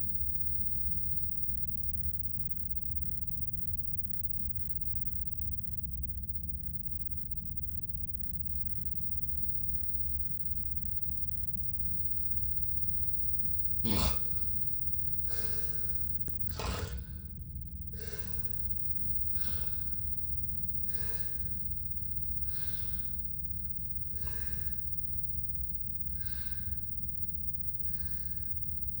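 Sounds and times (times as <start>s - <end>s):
steady low hum: 0.0s - 29.0s
person breathing heavily: 13.8s - 14.5s, 15.3s - 18.7s, 19.4s - 20.0s, 20.9s - 21.6s, 22.4s - 23.3s, 24.2s - 24.9s, 26.2s - 26.9s, 27.9s - 28.6s.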